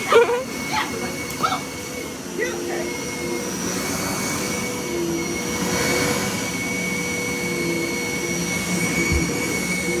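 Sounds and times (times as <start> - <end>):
vacuum cleaner running: 0.0 - 10.0.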